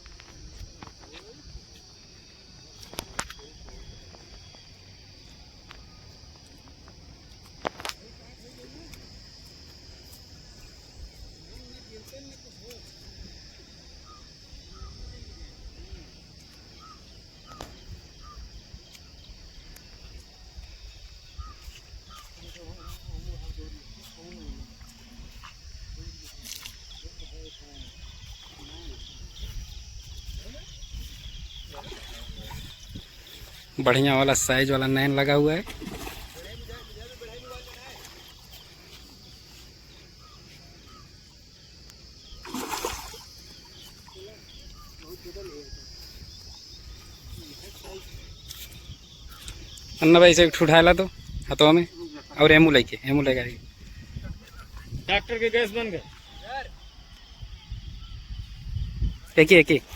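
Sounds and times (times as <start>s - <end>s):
high insect drone: 0.0s - 59.9s
small birds chirping: 9.9s - 59.9s
water splash: 35.5s - 38.5s, 42.3s - 44.1s.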